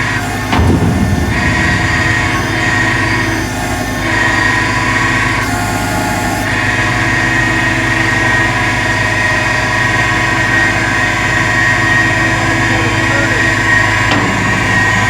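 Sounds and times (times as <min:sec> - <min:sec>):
high-pitched whine: 0:00.0 - 0:05.4
engine running: 0:00.0 - 0:15.0.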